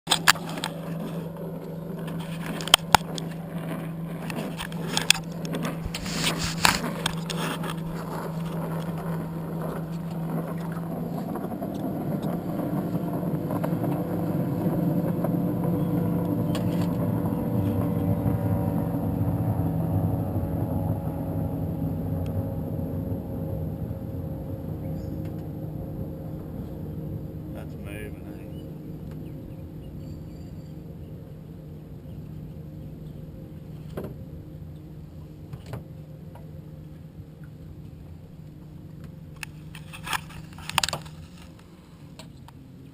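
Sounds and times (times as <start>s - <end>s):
powerboat engine passing: 0.1s - 42.9s.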